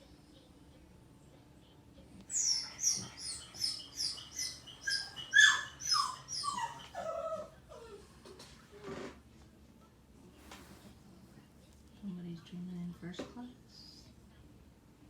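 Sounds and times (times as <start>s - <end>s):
dog whining: 2.3s - 8.9s.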